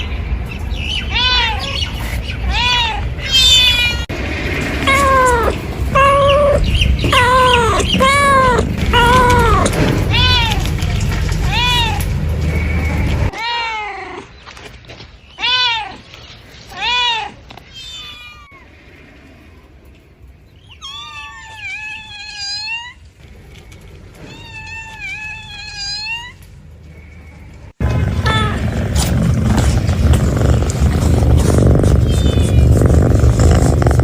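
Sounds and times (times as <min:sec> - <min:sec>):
cat meowing: 0:01.1 - 0:01.8, 0:02.4 - 0:04.1, 0:04.8 - 0:10.8, 0:20.8 - 0:23.0, 0:24.2 - 0:26.4, 0:28.2 - 0:28.6
low rumble: 0:04.0 - 0:13.3, 0:26.4 - 0:34.0.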